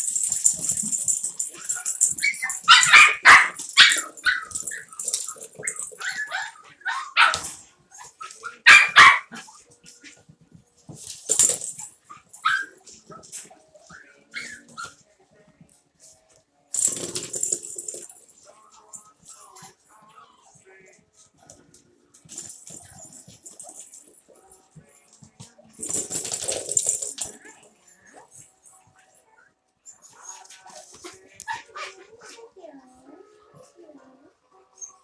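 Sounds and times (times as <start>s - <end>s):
puppies barking and yipping: 0.1s - 7.5s, 8.2s - 9.4s.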